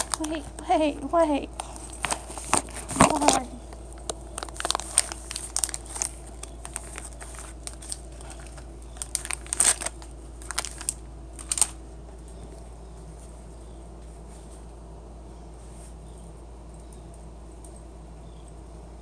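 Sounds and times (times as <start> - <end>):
plastic packaging crinkling: 0.0 - 11.9.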